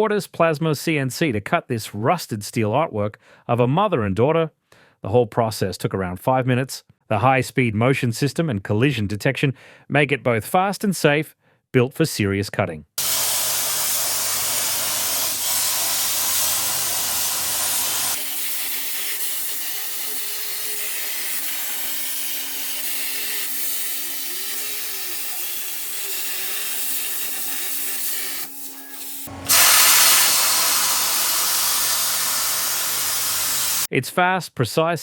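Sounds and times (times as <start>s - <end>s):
plasma torch hissing: 13.0s - 33.9s.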